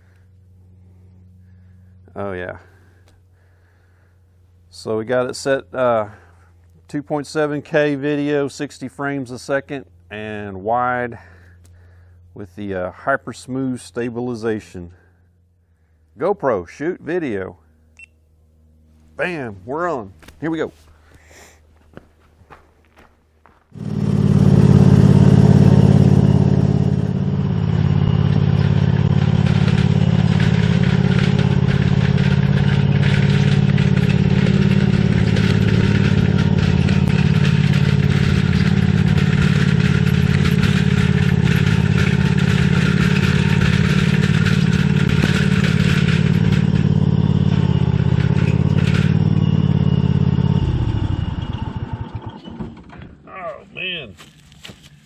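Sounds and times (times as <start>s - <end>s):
lawnmower engine running: 23.7s - 53.1s
trailer rattling over bumps: 23.7s - 53.2s.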